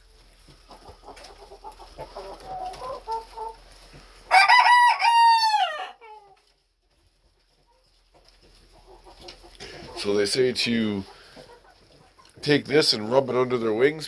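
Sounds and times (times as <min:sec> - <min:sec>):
chickens clucking: 0:00.0 - 0:14.0
rooster crowing: 0:04.3 - 0:06.0.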